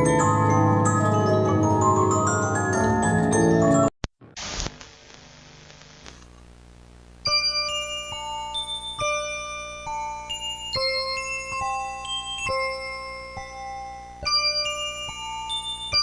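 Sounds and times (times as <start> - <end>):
burst of static: 4.2 - 10.4
faint hiss: 4.3 - 16.0
bell-like electronic alert tones: 7.3 - 16.0.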